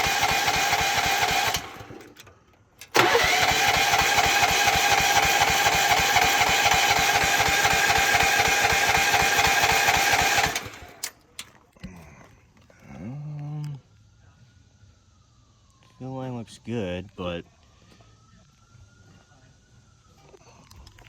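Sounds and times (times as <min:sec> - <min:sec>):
engine cranking on electric starter: 0:00.0 - 0:11.5.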